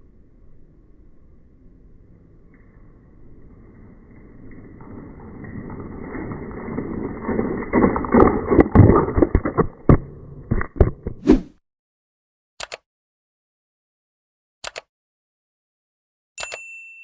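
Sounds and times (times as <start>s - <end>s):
toy car rolling rumble: 0.0s - 10.9s.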